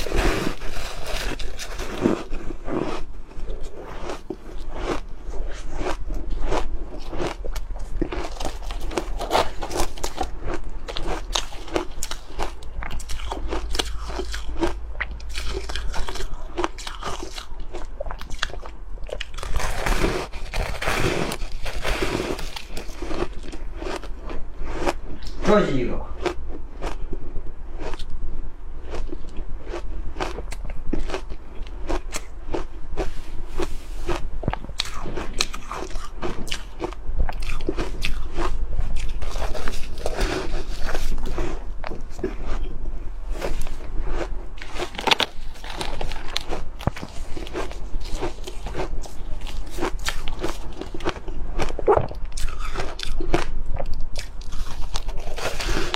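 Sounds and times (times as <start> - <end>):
ice crunched between teeth: 0.0 - 3.1, 15.4 - 25.4, 43.4 - 55.9
ice being chewed and crunched: 0.0 - 28.2, 28.8 - 55.9.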